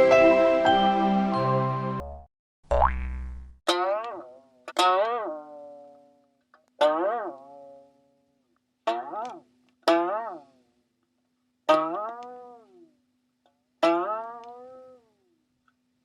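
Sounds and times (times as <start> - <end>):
cartoon boing: 2.0 - 4.3.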